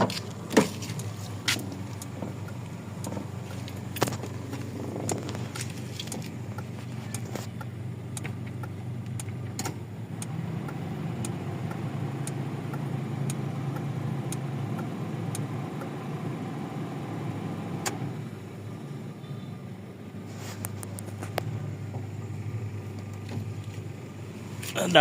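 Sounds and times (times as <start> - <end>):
car engine idling: 0.0 - 25.0
light ticks: 0.9 - 16.0.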